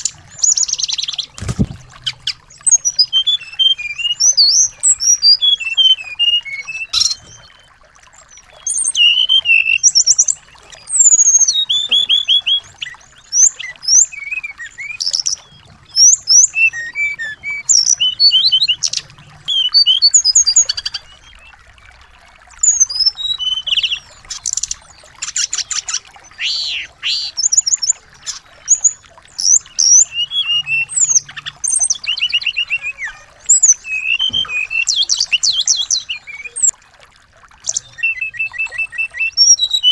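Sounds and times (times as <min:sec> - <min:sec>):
songbirds chirping and twittering: 0:00.0 - 0:39.9.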